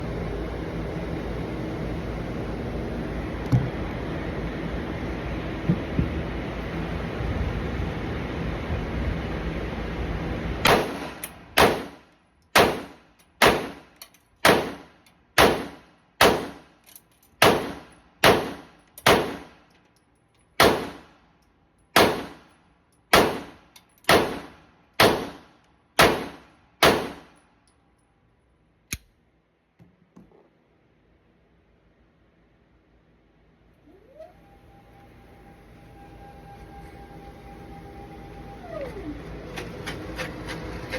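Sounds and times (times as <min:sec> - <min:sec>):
pistol shots: 0:10.7 - 0:12.0, 0:12.6 - 0:16.7, 0:17.4 - 0:19.5, 0:20.6 - 0:21.1, 0:22.0 - 0:22.5, 0:23.1 - 0:25.4, 0:26.0 - 0:27.3.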